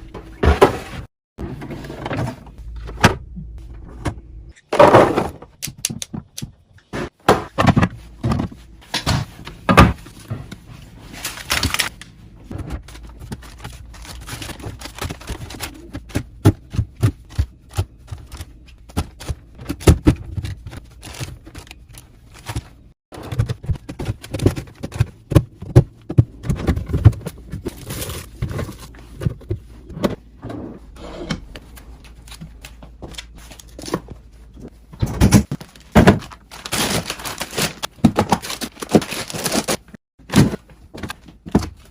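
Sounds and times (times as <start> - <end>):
food containers thunking and clicking: 4.0 - 10.6
packaging rustling: 35.4 - 40.0.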